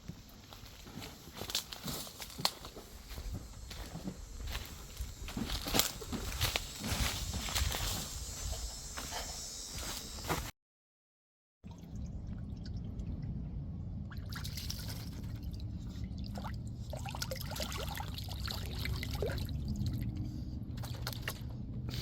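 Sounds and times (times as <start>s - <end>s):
steady low hum: 0.0s - 10.5s, 11.7s - 22.0s
water dripping and splashing: 14.1s - 20.2s, 20.8s - 21.6s.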